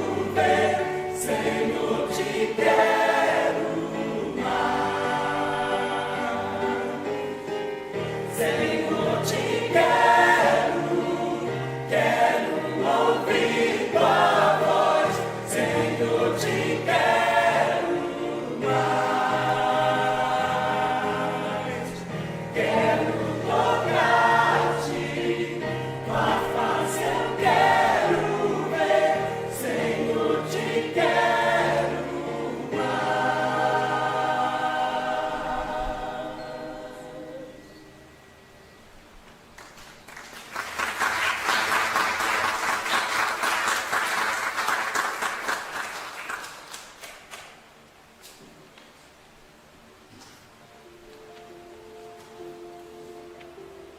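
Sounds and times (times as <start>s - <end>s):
choir singing a hymn: 0.0s - 39.0s.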